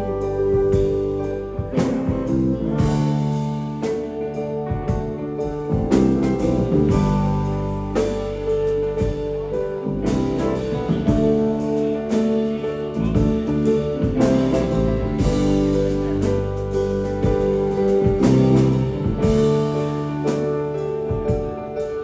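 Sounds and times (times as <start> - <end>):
live band playing: 0.0 - 22.0
drum hits: 4.7 - 8.4, 13.0 - 20.4.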